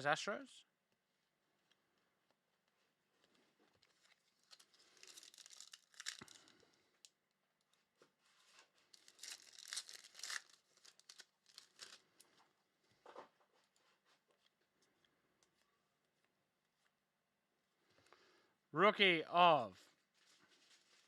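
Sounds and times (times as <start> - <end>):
card pack wrapper tearing and crinkling: 3.9 - 6.6, 8.9 - 12.1.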